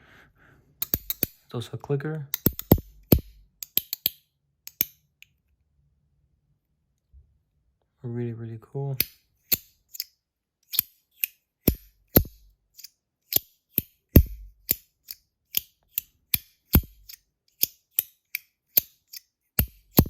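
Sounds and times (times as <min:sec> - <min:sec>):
fidget slider clicking: 0:00.8 - 0:01.4, 0:02.3 - 0:05.0, 0:09.0 - 0:10.1, 0:10.7 - 0:20.0.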